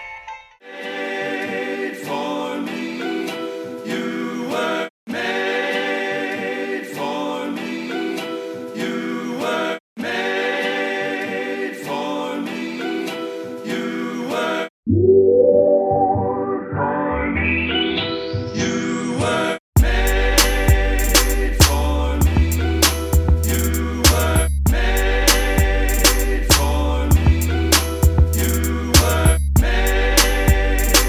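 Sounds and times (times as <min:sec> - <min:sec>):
chill instrumental music: 0:19.8 - 0:31.0.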